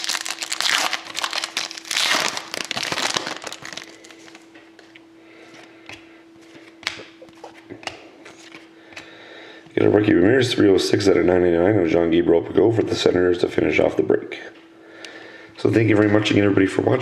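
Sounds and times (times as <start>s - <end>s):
plastic wrapper crinkling: 0.0s - 4.5s
faint steady hum: 0.0s - 17.0s
cards clicking while flipped: 6.8s - 9.1s.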